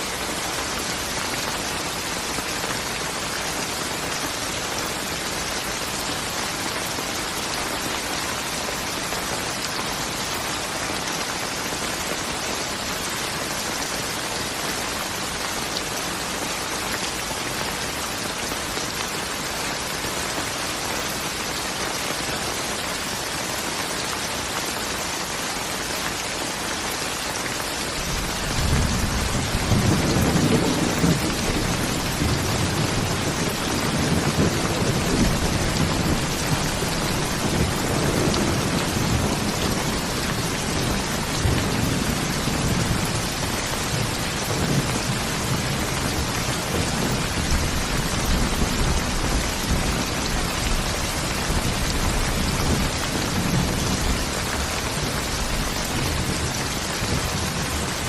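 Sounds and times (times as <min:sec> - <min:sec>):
steady rain falling: 0:00.0 - 0:58.0
thunder rumbling: 0:28.1 - 0:50.4.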